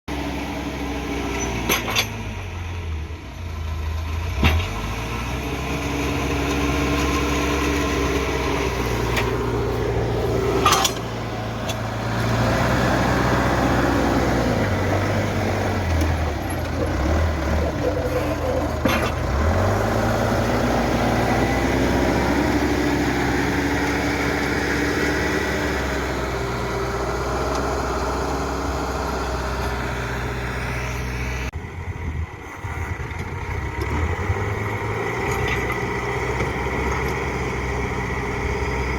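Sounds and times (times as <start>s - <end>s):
backhoe diesel engine revving: 0.1s - 38.9s
sharp metallic clanks: 10.5s - 11.8s.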